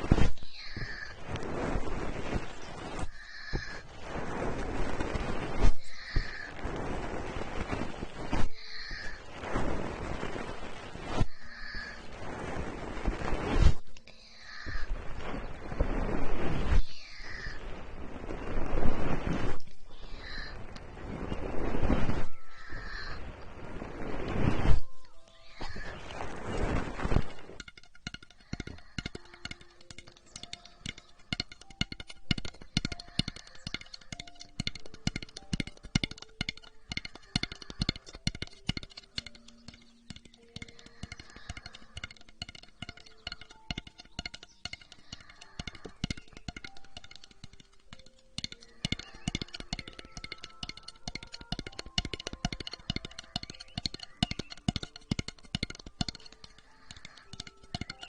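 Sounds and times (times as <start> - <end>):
close-up clicking and crackling: 0.0 - 12.1, 25.0 - 58.0
soft plucked melody: 27.2 - 58.0.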